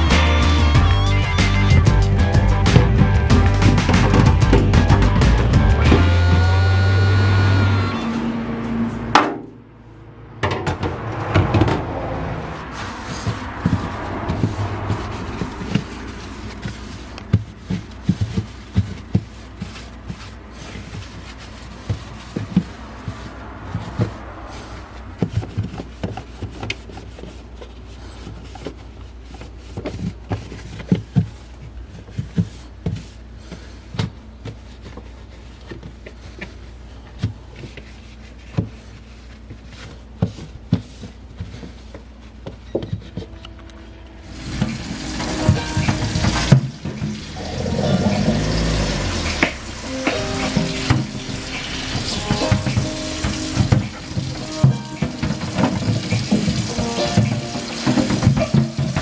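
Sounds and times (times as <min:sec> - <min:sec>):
containers knocking and clinking: 0:52.0 - 0:59.0.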